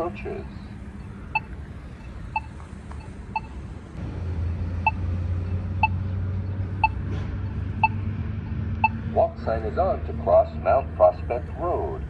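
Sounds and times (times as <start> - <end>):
pedestrian signal short beeps: 0.0 - 3.7, 4.8 - 5.0, 5.8 - 6.1, 6.8 - 8.1, 8.8 - 9.0
passing traffic rumble: 0.0 - 12.0.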